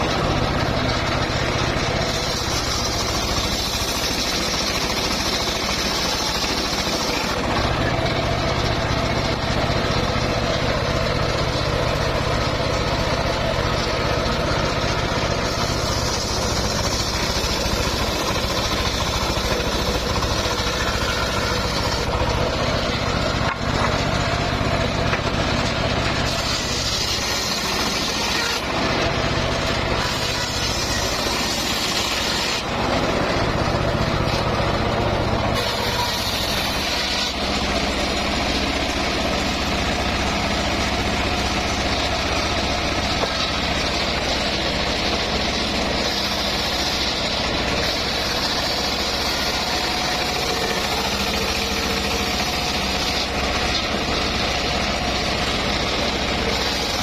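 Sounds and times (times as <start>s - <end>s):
saw blade cutting wood: 0.0s - 57.0s
sawmill engine running: 0.0s - 57.0s.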